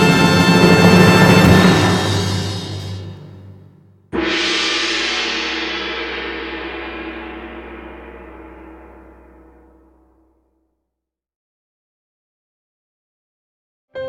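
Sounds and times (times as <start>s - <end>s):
gong strike ringing: 4.2s - 10.1s.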